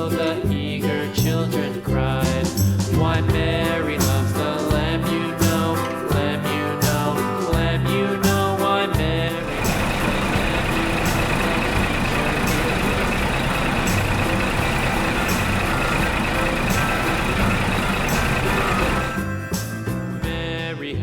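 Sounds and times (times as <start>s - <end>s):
truck engine running: 9.4s - 19.3s.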